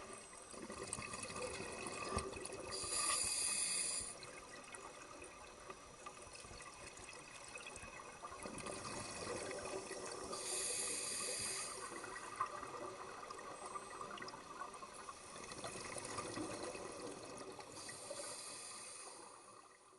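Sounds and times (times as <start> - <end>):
water bubbling and sloshing: 0.0 - 3.0, 4.1 - 19.9
hissing rush of bubbles: 0.6 - 4.5, 8.3 - 19.7.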